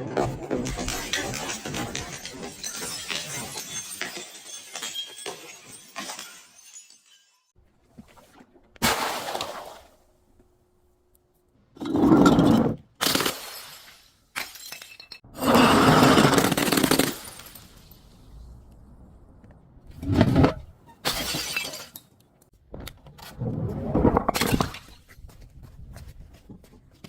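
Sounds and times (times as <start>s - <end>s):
glass breaking and shattering: 0.6s - 7.6s, 13.0s - 18.2s, 21.0s - 22.1s.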